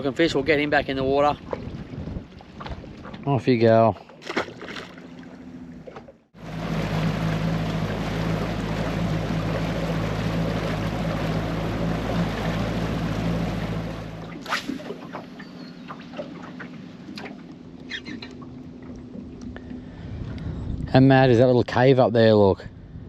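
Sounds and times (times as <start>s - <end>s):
wind and water rushing: 0.0s - 14.3s
boat motor running: 3.9s - 20.5s.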